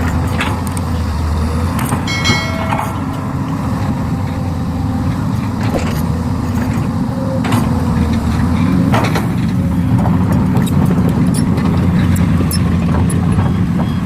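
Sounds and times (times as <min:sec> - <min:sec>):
heavy machinery engine running: 0:00.0 - 0:14.0
sharp knocks: 0:02.0 - 0:04.0.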